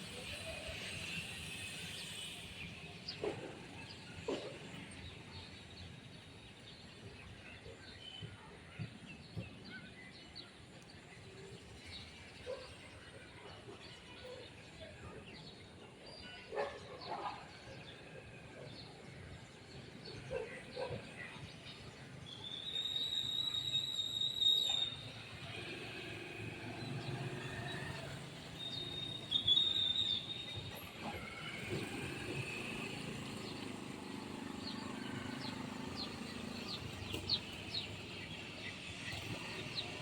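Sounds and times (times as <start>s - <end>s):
birds chirping: 18.8s - 40.0s.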